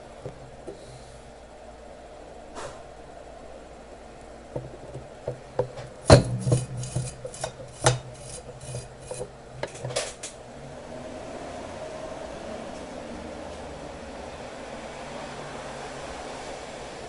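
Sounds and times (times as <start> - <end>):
metal hand tools clicking and scraping: 6.0 - 10.3.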